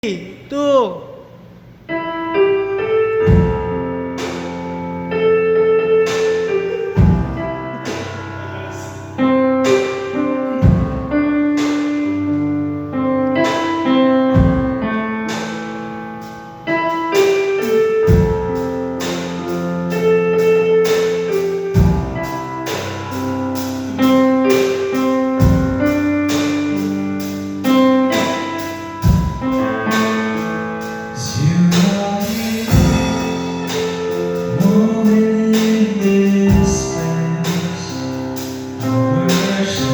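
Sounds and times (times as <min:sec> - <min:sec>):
keyboard playing slow chords: 0:01.4 - 0:39.9
deep bass note: 0:03.2 - 0:04.0, 0:06.7 - 0:09.4, 0:10.4 - 0:11.4.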